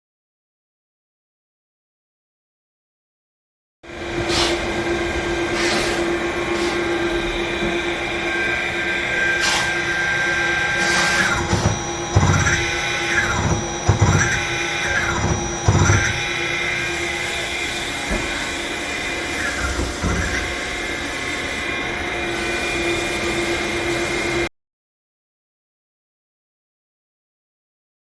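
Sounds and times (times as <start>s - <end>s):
machine hum: 10.2s - 21.2s
machine clicks: 11.1s - 16.3s.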